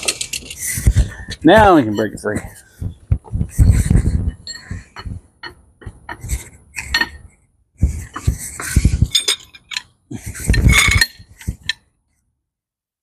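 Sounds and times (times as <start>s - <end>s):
hand tools clinking on metal: 9.1s - 9.9s, 10.5s - 11.8s.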